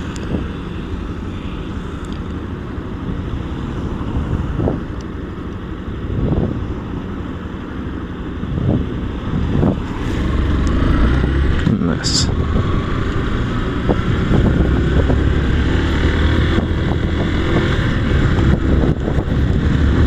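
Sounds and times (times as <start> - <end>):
motorcycle engine running: 0.0 - 20.0
wind noise on microphone: 3.0 - 5.0, 6.0 - 6.9, 8.4 - 20.0.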